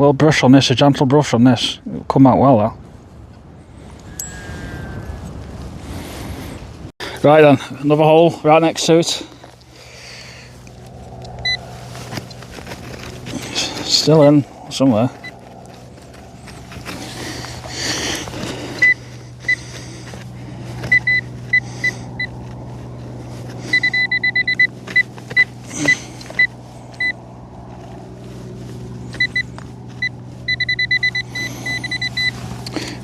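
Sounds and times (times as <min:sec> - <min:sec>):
steady low drone: 0:03.3 - 0:33.0
pinpointer high beeps: 0:04.0 - 0:05.5, 0:23.7 - 0:24.7, 0:30.5 - 0:32.4.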